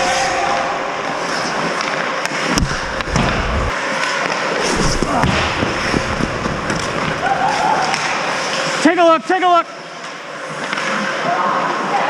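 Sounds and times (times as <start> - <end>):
hockey sticks and puck clacking: 1.2 - 3.4, 4.0 - 8.8, 10.0 - 11.3
skate blades scraping ice: 1.2 - 8.8
thuds: 2.5 - 3.7, 4.7 - 8.0.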